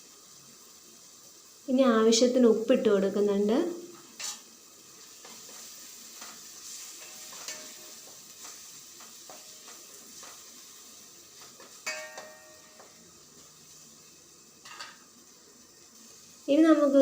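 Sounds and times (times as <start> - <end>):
food sizzling in a pan: 0.0 - 17.0
spoon scraping and tapping pan: 3.9 - 4.5, 5.2 - 10.6, 11.4 - 13.0, 14.6 - 15.1
spoon knocking against pan: 11.6 - 13.0.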